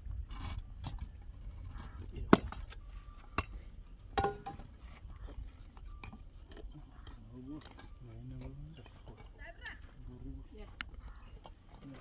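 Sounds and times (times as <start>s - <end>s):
sharp clinks and knocks: 2.3s - 4.7s.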